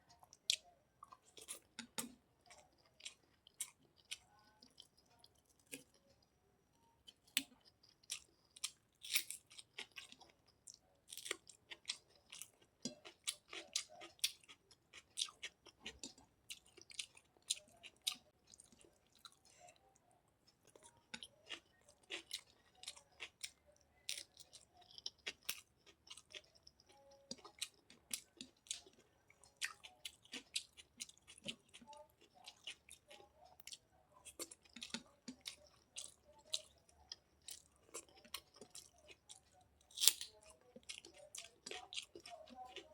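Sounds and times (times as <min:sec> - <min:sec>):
person chewing and biting: 0:20.7 - 0:42.9.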